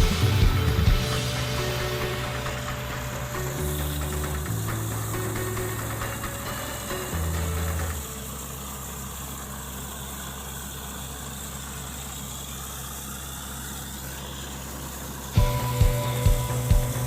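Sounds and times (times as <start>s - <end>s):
loud machine with rhythmic knocks: 0.0s - 8.4s
drilling rig engine idling: 0.0s - 17.0s.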